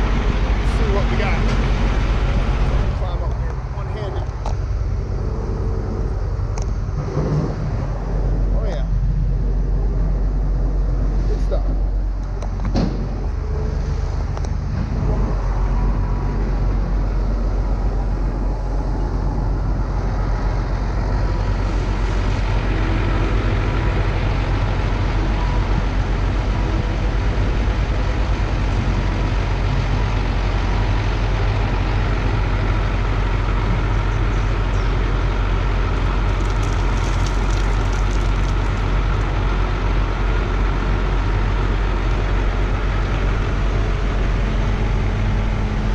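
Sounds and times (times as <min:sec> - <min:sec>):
diesel engine droning: 0:00.0 - 0:45.9.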